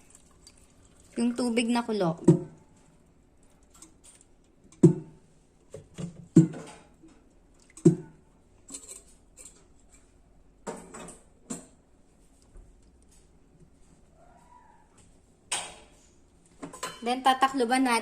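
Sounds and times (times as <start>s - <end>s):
kitchenware knocking and clinking: 10.6s - 11.8s, 16.6s - 17.2s.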